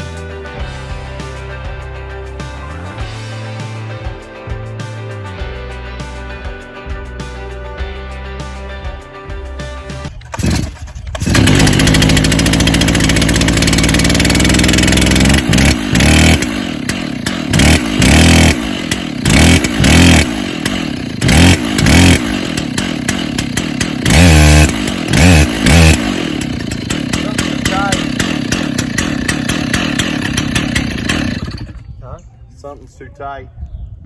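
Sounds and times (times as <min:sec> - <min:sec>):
chainsaw revving: 0:10.1 - 0:31.9.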